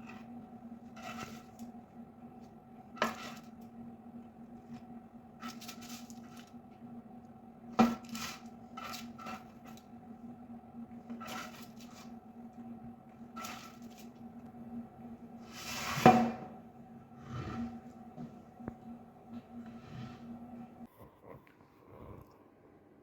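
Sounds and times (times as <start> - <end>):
steady low hum: 0.0 - 23.0
kitchen items clicking and scraping: 2.9 - 3.7, 5.4 - 6.6, 7.8 - 9.9, 11.0 - 12.2, 13.3 - 14.2.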